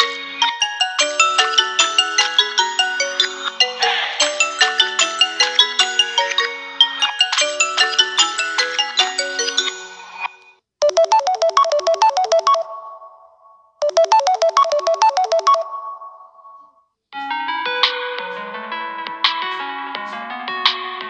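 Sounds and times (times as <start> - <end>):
fast chiming ringtone: 0.0 - 16.5
melodic phone ringtone: 0.0 - 18.7.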